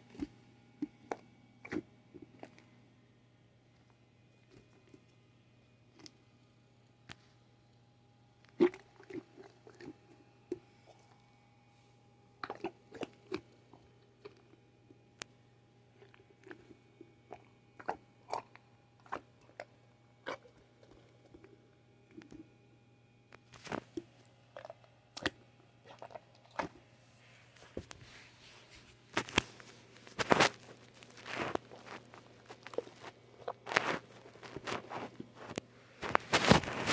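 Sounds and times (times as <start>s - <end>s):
packaging crinkling: 29.1s - 36.9s.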